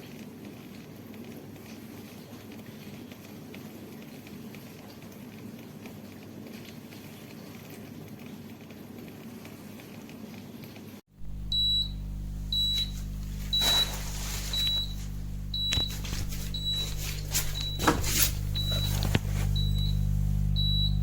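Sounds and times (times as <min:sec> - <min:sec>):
electrical hum: 0:00.0 - 0:21.0
electronic appliance beeps: 0:11.2 - 0:21.0
clicks: 0:14.5 - 0:21.0.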